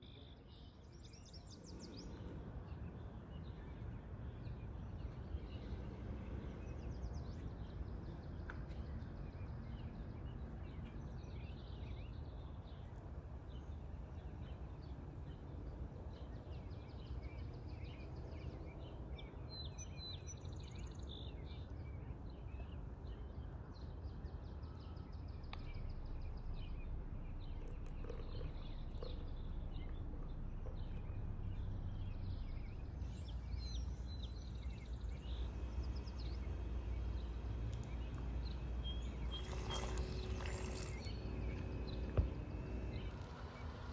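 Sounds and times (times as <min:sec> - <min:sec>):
small birds chirping: 0:00.0 - 0:43.9
low background rumble: 0:24.1 - 0:43.9.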